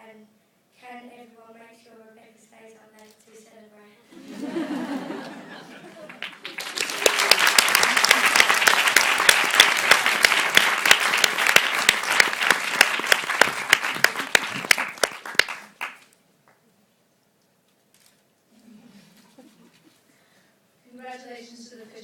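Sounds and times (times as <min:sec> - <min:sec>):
audience applauding: 0:05.1 - 0:16.1.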